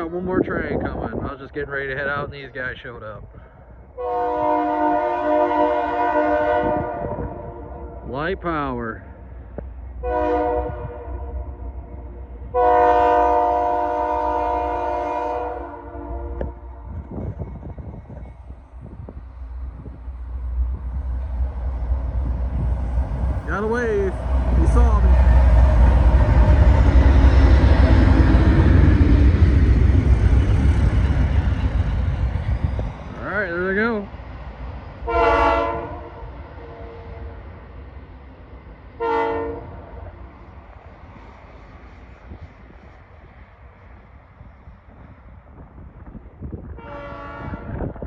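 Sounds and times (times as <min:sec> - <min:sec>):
locomotive air horn: 0:04.0 - 0:08.0, 0:10.0 - 0:11.5, 0:12.5 - 0:16.6, 0:35.0 - 0:37.4, 0:39.0 - 0:39.8, 0:46.8 - 0:47.8
steady low rumble: 0:05.7 - 0:46.8.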